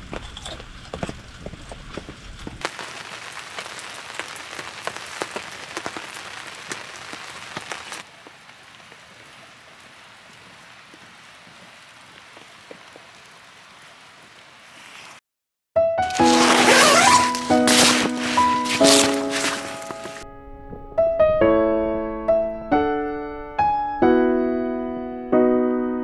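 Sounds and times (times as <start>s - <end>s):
large raindrops tapping: 2.6s - 15.2s, 16.0s - 20.2s
rain falling: 2.6s - 15.2s, 16.0s - 20.2s.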